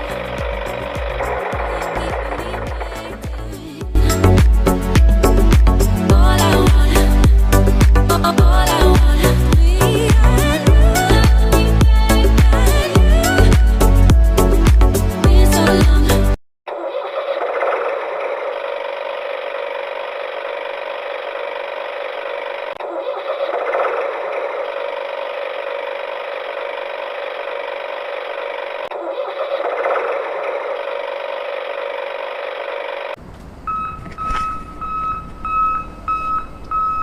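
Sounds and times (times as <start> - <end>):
small electric motor running: 0.0 - 3.5, 18.5 - 22.8, 24.2 - 28.9.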